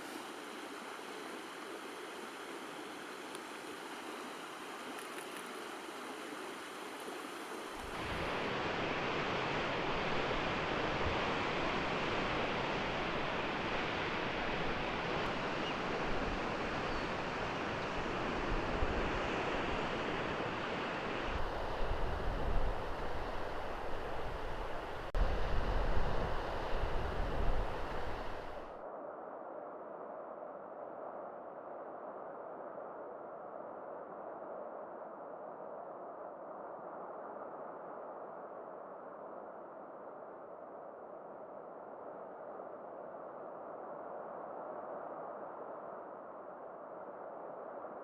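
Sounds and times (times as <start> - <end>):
ocean surf hissing: 0.0 - 28.8.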